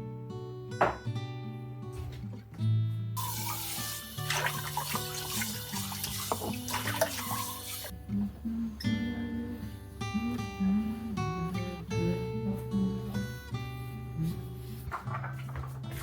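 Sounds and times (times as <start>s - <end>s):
acoustic guitar music: 0.0s - 16.0s
tap running into sink: 3.2s - 7.8s.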